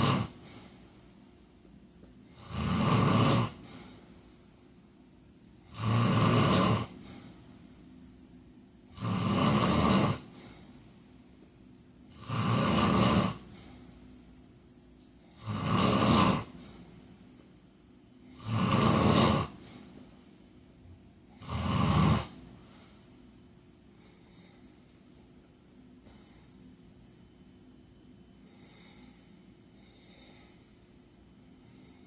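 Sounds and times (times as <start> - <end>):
man snoring: 0.0 - 0.6, 2.3 - 4.0, 5.6 - 7.3, 8.9 - 10.6, 12.1 - 13.8, 15.2 - 16.8, 18.2 - 19.9, 21.3 - 22.4.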